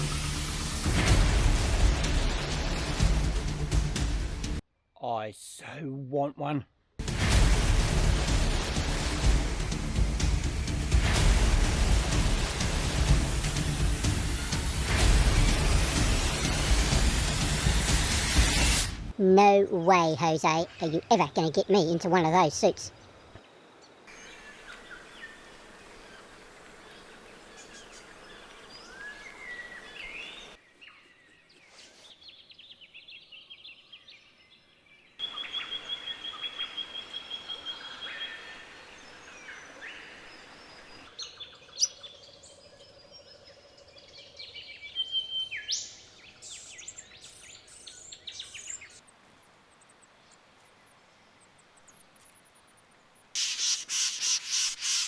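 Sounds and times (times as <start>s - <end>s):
rapid high bird trill: 53.4s - 55.0s.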